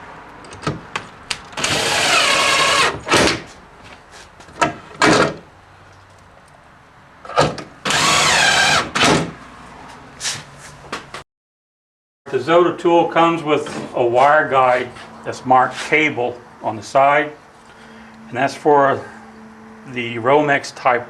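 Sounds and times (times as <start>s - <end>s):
power drill driving screws: 1.6s - 3.2s, 7.8s - 9.0s.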